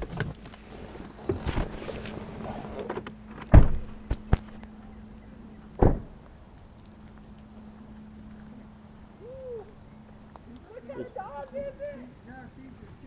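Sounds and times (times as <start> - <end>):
sharp knocks and thuds: 3.4 - 4.6, 5.8 - 6.2.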